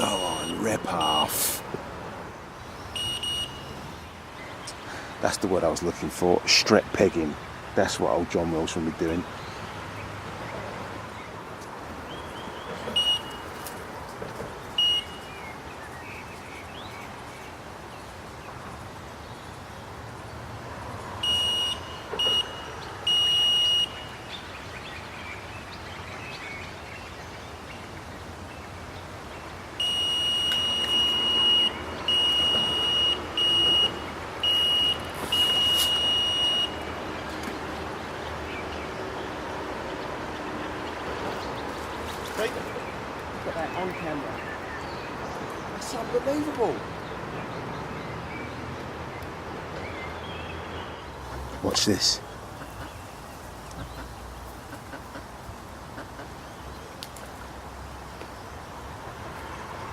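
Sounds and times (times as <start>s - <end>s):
bite alarm beeping: 0.0s - 1.5s, 2.9s - 3.8s, 13.0s - 13.5s, 14.8s - 15.3s, 21.2s - 24.1s, 29.8s - 36.9s.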